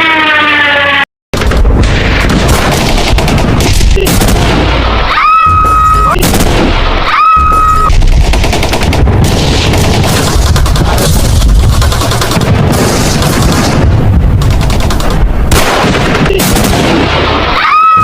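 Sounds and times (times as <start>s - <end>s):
continuous gunfire: 1.3s - 18.0s
booming explosions: 1.4s - 18.0s
whistle-like tones: 7.3s - 7.9s.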